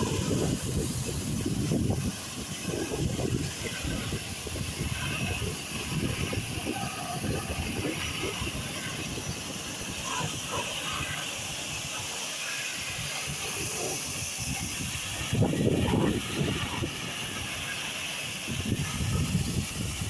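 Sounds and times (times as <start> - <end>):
low rumbling gusts: 0.0 - 20.0
pressurised jet hissing: 0.0 - 20.0.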